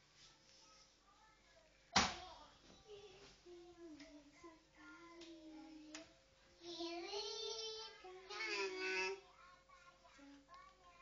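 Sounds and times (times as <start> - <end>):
child singing faintly: 0.0 - 11.0.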